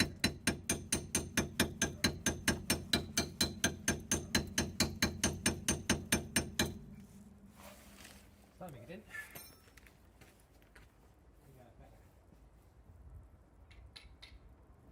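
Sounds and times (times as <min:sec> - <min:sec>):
rapid hammer blows on metal: 0:00.0 - 0:06.8.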